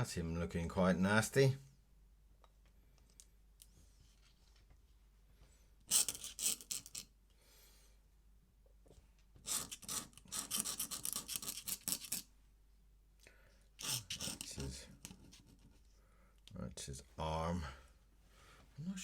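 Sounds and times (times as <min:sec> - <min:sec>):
pen scratching on paper: 0:05.9 - 0:07.0, 0:09.4 - 0:12.3, 0:13.8 - 0:15.9.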